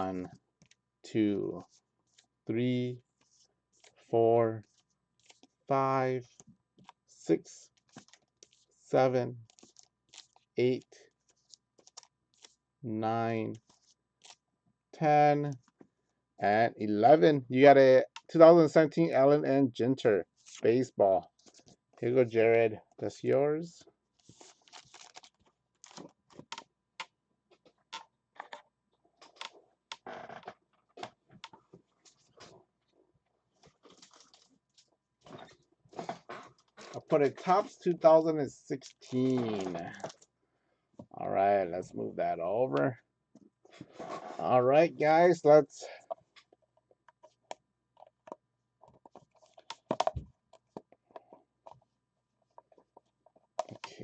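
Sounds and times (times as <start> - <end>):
cards rustling scrape: 3.1 - 5.6, 7.7 - 10.6, 13.6 - 14.4, 24.2 - 26.4.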